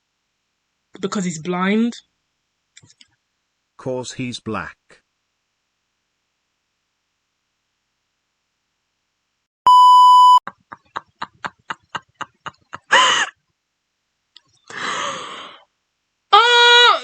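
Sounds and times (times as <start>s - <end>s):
censor bleep: 9.7s - 10.4s.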